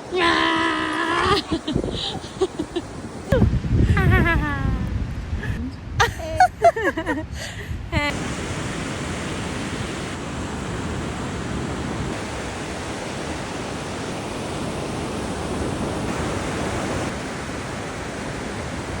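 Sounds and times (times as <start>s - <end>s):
wind buffeting microphone: 0.0s - 12.5s
ocean surf rushing: 0.0s - 19.0s.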